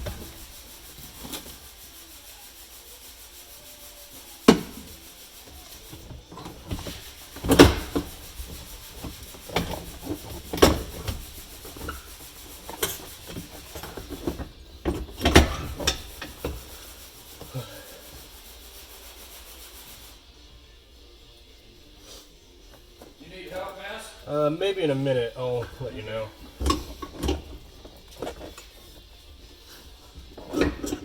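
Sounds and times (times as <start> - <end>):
hand tools clunking and knocking: 0.0 - 1.7, 4.5 - 18.2, 24.7 - 31.0.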